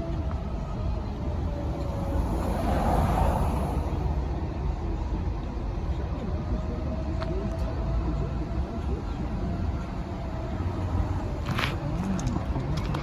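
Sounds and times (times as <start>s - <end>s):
distant warning siren: 0.0s - 4.5s, 7.4s - 11.6s
low street traffic rumble: 0.0s - 13.0s
vehicle passing: 0.4s - 4.9s.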